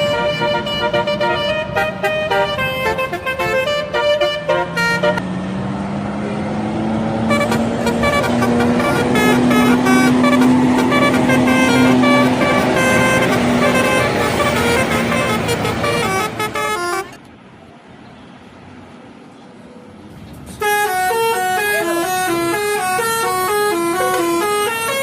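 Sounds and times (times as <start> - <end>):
multi-tone bus horn melody: 0.0 - 5.3, 7.1 - 17.2, 20.6 - 25.0
bus engine: 0.0 - 25.0
low drone rising in pitch: 5.2 - 16.4.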